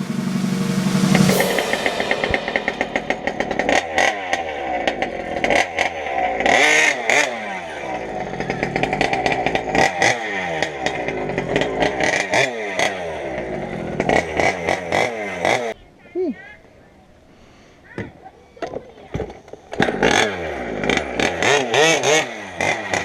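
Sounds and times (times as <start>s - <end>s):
two-stroke rc truck engine revving: 4.8s - 15.8s, 19.1s - 23.0s.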